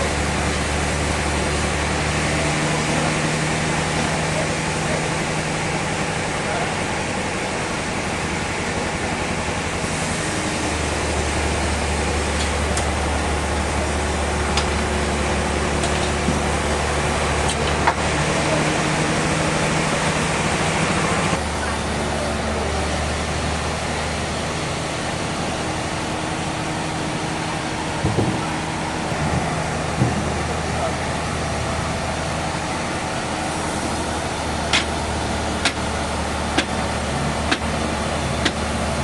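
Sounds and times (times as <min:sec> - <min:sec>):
sawmill machinery running: 0:00.0 - 0:39.0.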